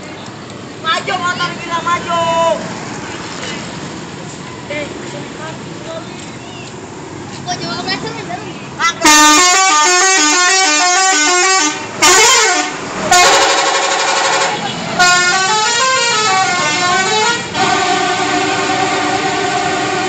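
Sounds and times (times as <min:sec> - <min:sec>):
bus musical horn melody: 0:09.0 - 0:20.0.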